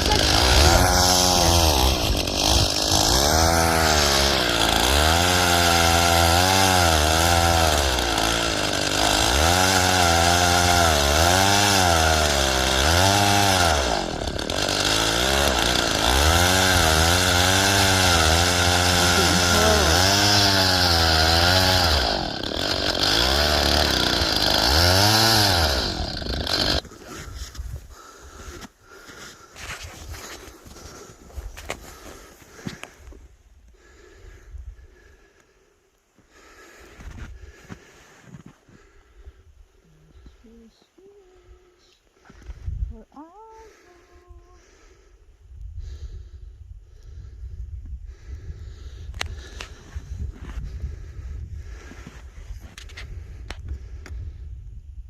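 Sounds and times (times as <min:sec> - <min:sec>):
ice auger engine revving: 0:00.0 - 0:27.3.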